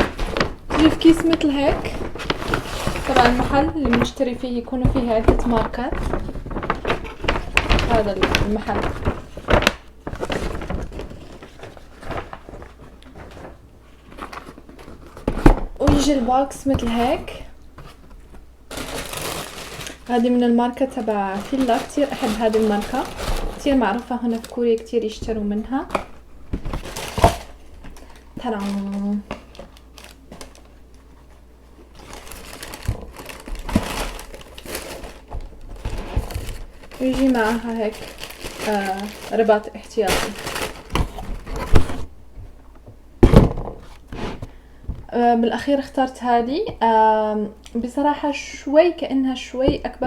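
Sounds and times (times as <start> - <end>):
packaging rustling and crinkling: 0.0 - 45.1
shoe box rustling and knocking: 32.0 - 39.3, 43.2 - 45.1.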